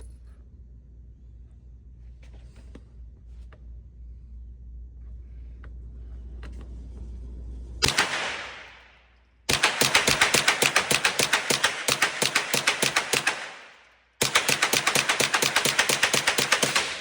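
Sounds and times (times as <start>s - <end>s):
loud gunshot: 7.8s - 8.9s
rapid string of gunshots: 7.8s - 17.0s.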